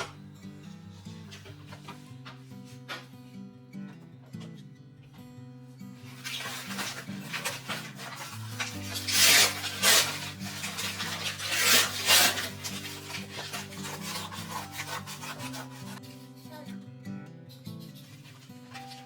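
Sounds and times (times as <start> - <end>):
light background music: 0.0 - 19.0
rubbing scraping strokes: 6.0 - 16.4.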